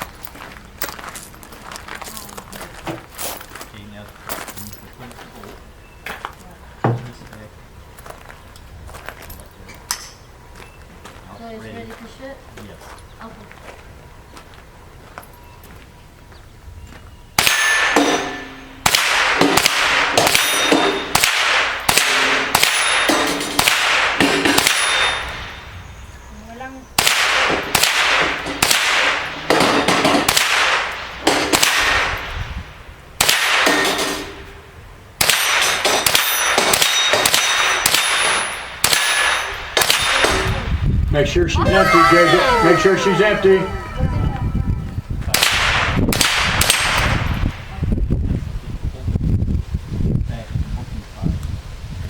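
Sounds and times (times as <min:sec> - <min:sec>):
steel plate targets clanging: 0:17.4 - 0:18.9, 0:20.2 - 0:21.2, 0:22.0 - 0:25.6, 0:35.5 - 0:40.4
rifle shots: 0:17.4 - 0:25.6, 0:27.0 - 0:32.3, 0:33.2 - 0:34.2, 0:35.2 - 0:40.4, 0:45.4 - 0:47.2.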